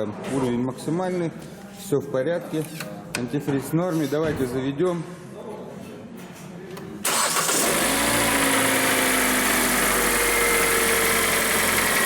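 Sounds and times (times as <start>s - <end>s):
car engine starting: 7.0s - 12.0s
car engine fast idle: 7.1s - 12.0s.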